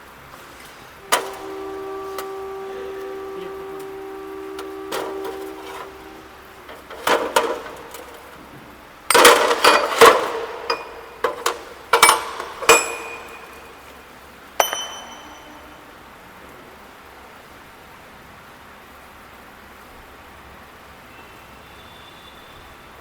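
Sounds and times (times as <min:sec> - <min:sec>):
metal parts clanking: 0:01.0 - 0:15.8.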